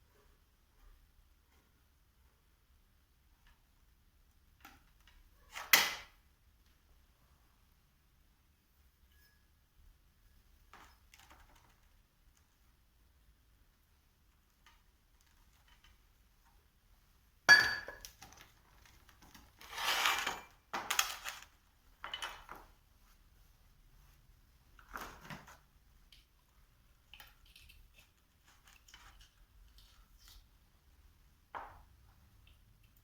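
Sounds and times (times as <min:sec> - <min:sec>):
metal parts scraping and rattling: 0:19.5 - 0:22.5.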